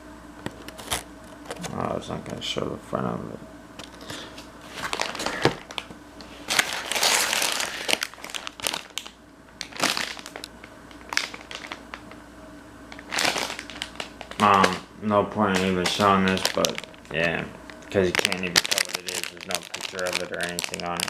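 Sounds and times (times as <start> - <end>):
plastic packaging crinkling: 3.8 - 12.2, 12.9 - 21.0.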